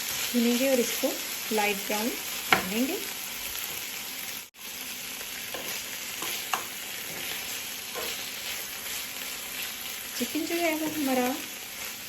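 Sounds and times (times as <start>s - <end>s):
chicken sizzling in hot oil: 0.0s - 12.0s
spatula scraping a pan: 5.4s - 10.1s.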